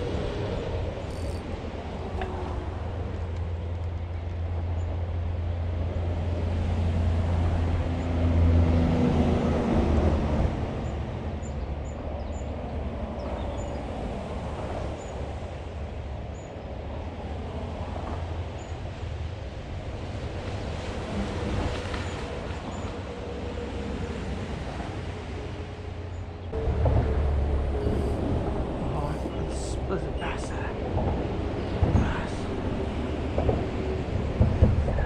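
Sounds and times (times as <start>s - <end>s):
highway traffic rumble: 0.0s - 35.0s.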